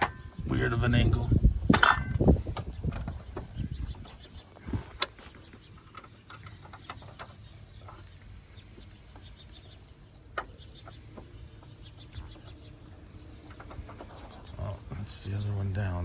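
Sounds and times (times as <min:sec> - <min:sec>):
hand tools clinking: 0:01.7 - 0:02.3.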